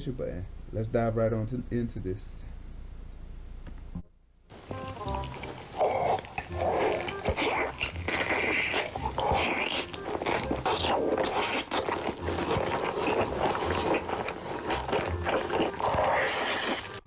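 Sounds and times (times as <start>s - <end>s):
chewing food with wet smacking: 4.5s - 17.0s.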